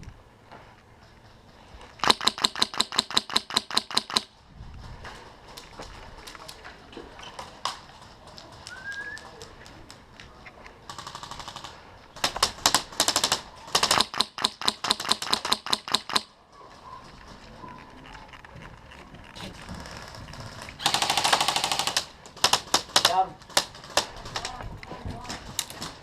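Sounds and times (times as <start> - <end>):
airsoft gun full-auto rattle: 2.0 - 4.3, 10.9 - 16.3, 19.7 - 24.6
sharp airsoft gun shots: 2.0 - 4.3, 13.8 - 16.3.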